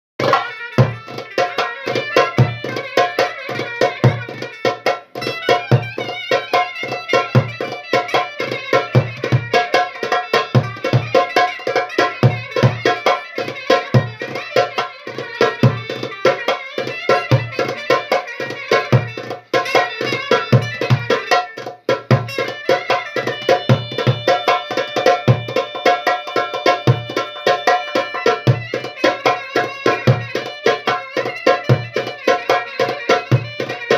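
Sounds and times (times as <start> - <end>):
goblet drum rhythm: 0.2 - 33.9
melody instrument playing: 23.2 - 29.3.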